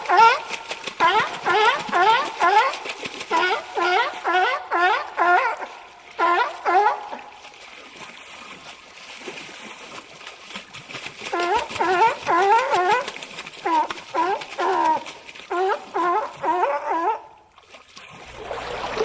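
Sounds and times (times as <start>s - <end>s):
seals barking: 0.0s - 7.3s, 11.3s - 17.3s
water splashing: 0.0s - 19.0s.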